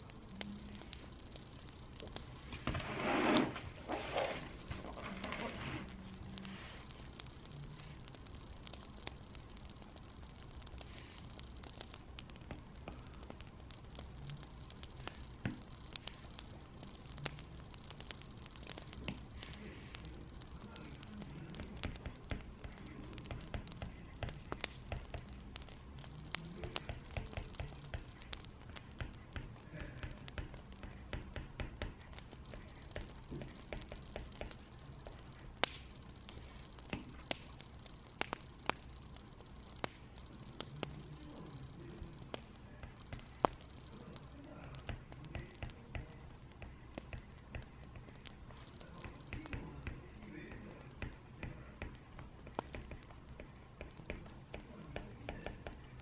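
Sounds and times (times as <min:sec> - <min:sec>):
low rumble of burning logs: 0:00.0 - 0:56.0
wood fire crackling: 0:00.0 - 0:56.0.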